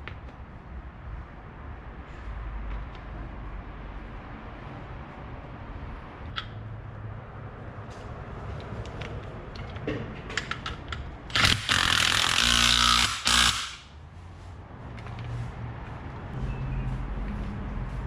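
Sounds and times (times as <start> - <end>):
impact wrench bursts: 11.3 - 13.9.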